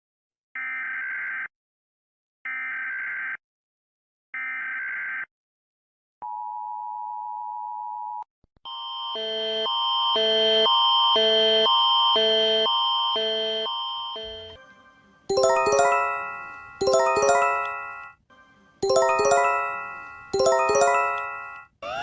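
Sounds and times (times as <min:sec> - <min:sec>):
alternating electronic alarm tones: 0:09.2 - 0:14.6, 0:15.3 - 0:18.2, 0:18.8 - 0:22.0.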